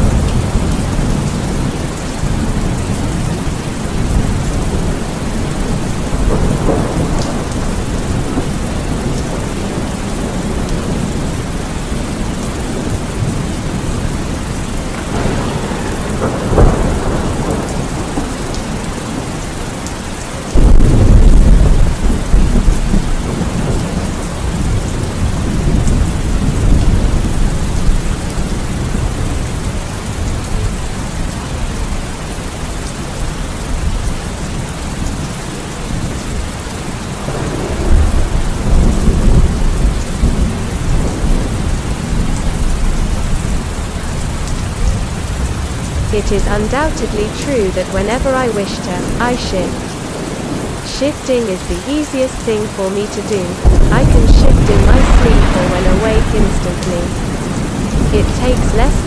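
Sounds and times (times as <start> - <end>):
heavy rain: 0.0 - 59.0
thunder rumbling: 12.2 - 19.3, 20.6 - 28.2, 53.6 - 59.0
loud thunderclap booming: 14.9 - 18.4, 53.6 - 56.4
sharp thunder crack: 54.5 - 56.4.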